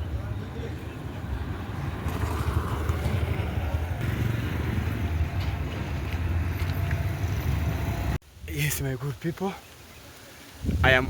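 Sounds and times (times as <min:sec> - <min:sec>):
motorcycle engine drone: 0:00.0 - 0:08.2.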